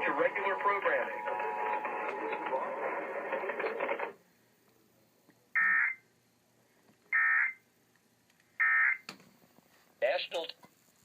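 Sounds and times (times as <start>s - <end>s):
loud broadcast audio: 0.0s - 4.2s, 10.0s - 10.6s.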